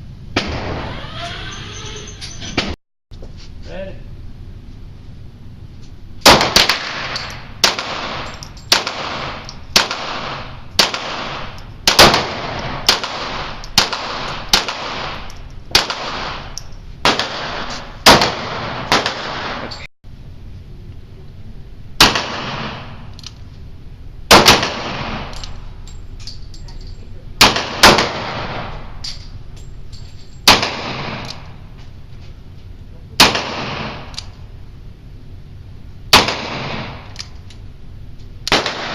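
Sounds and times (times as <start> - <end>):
pistol shots echoing: 6.2 - 19.7, 24.3 - 25.5, 27.4 - 28.9, 30.4 - 31.6, 33.2 - 34.3, 36.1 - 37.2, 38.5 - 38.9.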